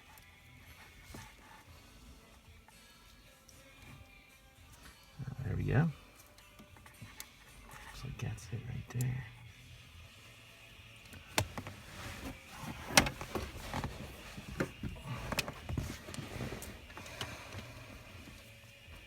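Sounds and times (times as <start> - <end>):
rattling and rustling: 11.2 - 19.0.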